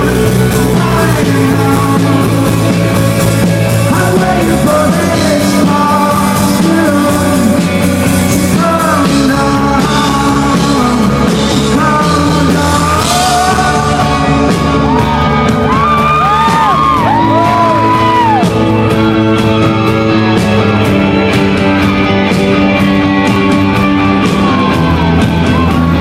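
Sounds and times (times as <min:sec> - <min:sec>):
man singing: 0:00.0 - 0:18.4
rock band playing live: 0:00.0 - 0:26.0.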